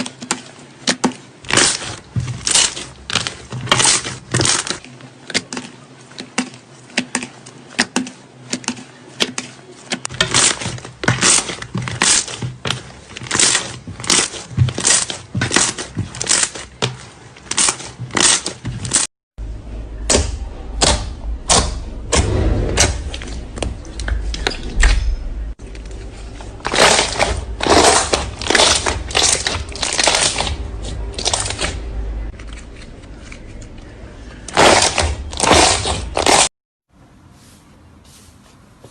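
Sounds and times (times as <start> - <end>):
low hum: 19.4 - 34.6.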